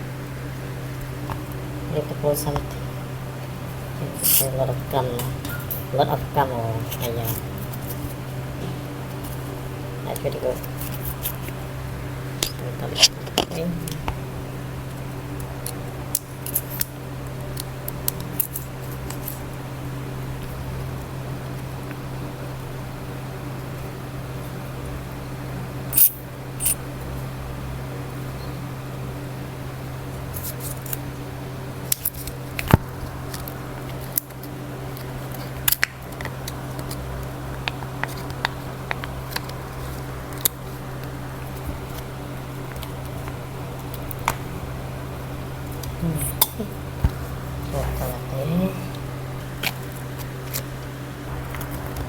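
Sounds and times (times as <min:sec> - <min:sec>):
low steady hum: 0:00.0 - 0:52.0
small tools clicking and scraping: 0:04.2 - 0:04.5, 0:12.4 - 0:13.6, 0:26.0 - 0:26.8.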